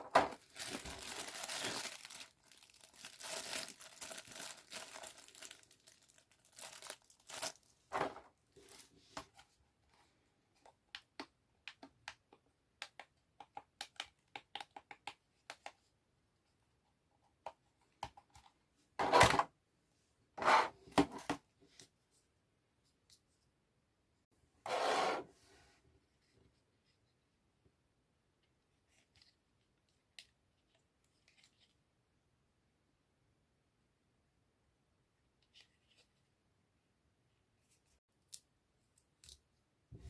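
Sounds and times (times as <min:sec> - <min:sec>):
packaging tearing: 0:00.4 - 0:07.7.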